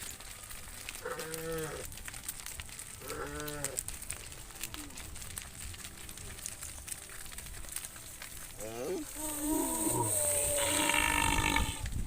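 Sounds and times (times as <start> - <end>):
cattle mooing: 1.0 - 1.9, 3.0 - 3.8, 8.6 - 11.9.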